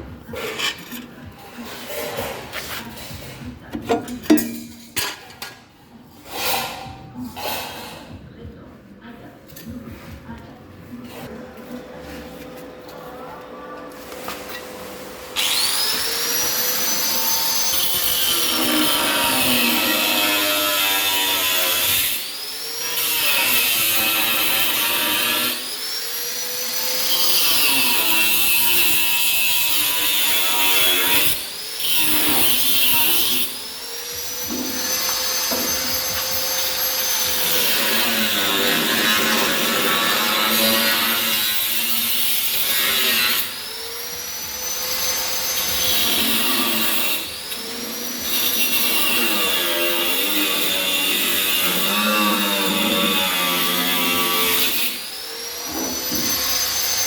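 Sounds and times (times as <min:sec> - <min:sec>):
power tool on sheet metal: 0:15.4 - 0:57.0.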